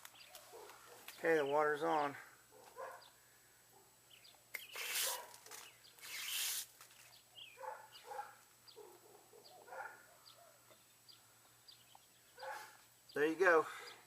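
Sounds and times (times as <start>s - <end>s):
dog barking: 0.5s - 1.1s, 2.5s - 3.1s, 5.0s - 5.5s, 7.6s - 10.6s, 12.4s - 12.8s
short hissing bursts: 4.6s - 5.4s, 6.0s - 6.8s.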